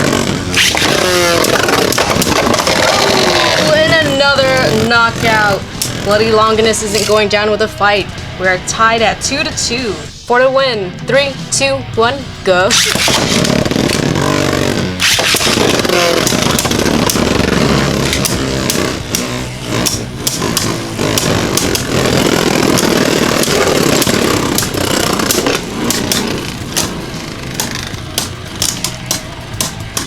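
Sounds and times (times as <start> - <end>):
spinning tops whirring and grinding: 0.0 - 10.2, 12.3 - 30.0
spinning tops clicking as they collide: 15.0 - 30.0.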